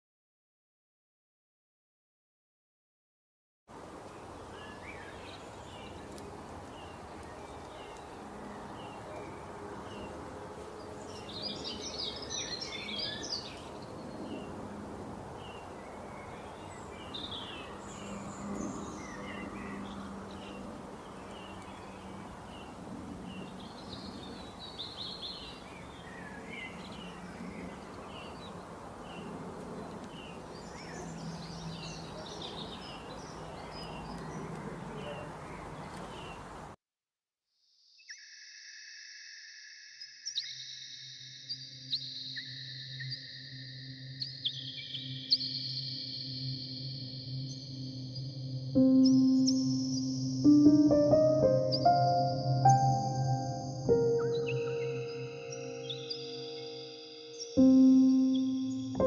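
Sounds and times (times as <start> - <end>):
low background noise: 3.7 - 36.8
small birds chirping: 4.0 - 14.6, 15.3 - 36.8, 40.2 - 59.0.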